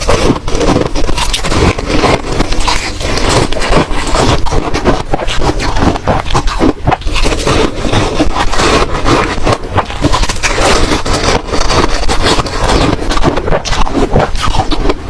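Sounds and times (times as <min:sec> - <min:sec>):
ice crunching between teeth: 0:00.0 - 0:15.0.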